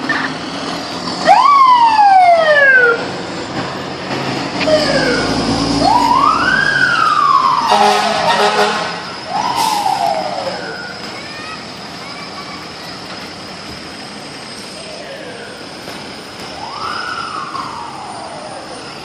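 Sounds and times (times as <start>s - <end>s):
fire truck siren wailing: 0.0s - 19.0s
blaring horn blast: 7.5s - 9.8s.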